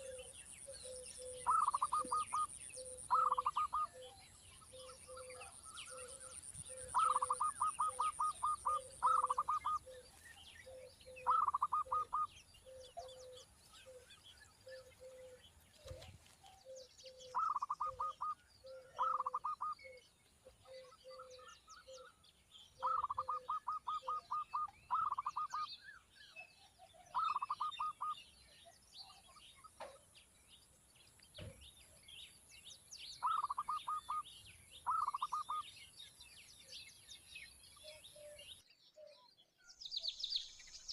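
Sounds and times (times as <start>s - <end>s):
birds stuttering calls: 0.0s - 4.1s, 4.7s - 14.0s, 16.7s - 20.0s, 22.8s - 25.7s
high bird chirps: 0.0s - 10.0s, 10.6s - 15.3s, 16.8s - 20.0s, 22.8s - 26.3s, 27.1s - 28.2s, 33.1s - 35.8s.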